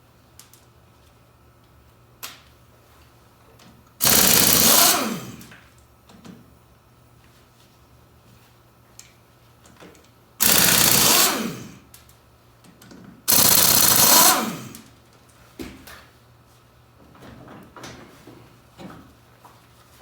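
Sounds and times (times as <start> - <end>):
impact wrench hammering: 4.0 - 5.5, 10.4 - 11.8, 13.3 - 14.9.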